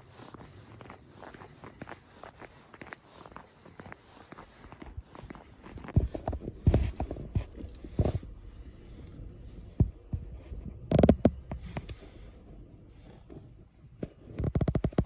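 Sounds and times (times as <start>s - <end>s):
footsteps in snow: 0.0s - 10.6s.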